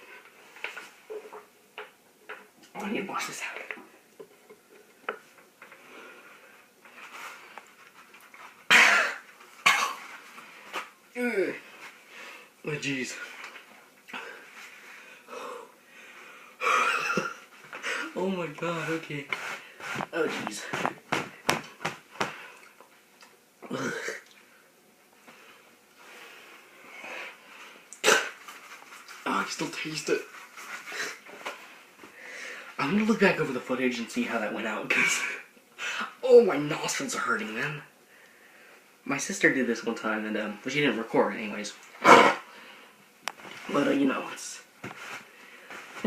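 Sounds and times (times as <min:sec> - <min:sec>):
man coughing hard: 0:08.7 - 0:10.0, 0:16.6 - 0:17.4
man breathing hard: 0:32.1 - 0:32.8.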